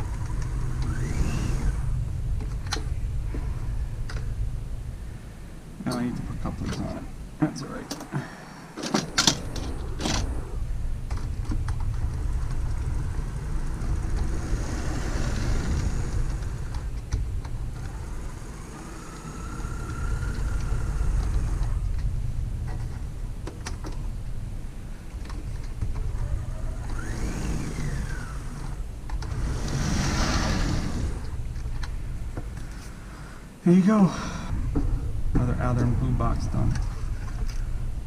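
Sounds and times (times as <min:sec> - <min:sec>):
model locomotive motor rumble: 0:00.0 - 0:04.4, 0:09.0 - 0:23.3, 0:24.9 - 0:33.3
faint motor whine: 0:00.0 - 0:38.0.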